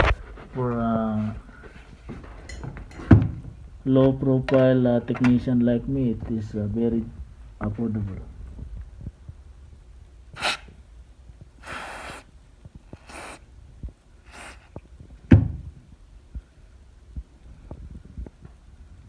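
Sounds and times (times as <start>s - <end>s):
spray can hissing: 10.4s - 10.7s, 11.6s - 12.3s, 12.9s - 13.4s, 14.3s - 14.8s.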